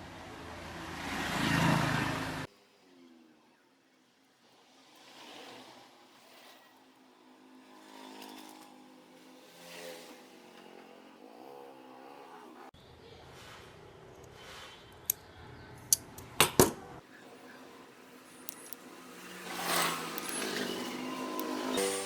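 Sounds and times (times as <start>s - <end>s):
small motor running: 4.5s - 12.7s, 17.0s - 22.0s.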